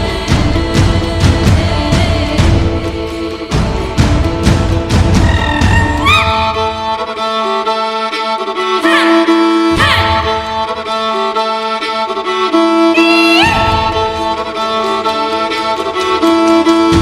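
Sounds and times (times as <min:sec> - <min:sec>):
low pulsing beat: 0:00.0 - 0:06.8
instrumental music: 0:00.0 - 0:17.0.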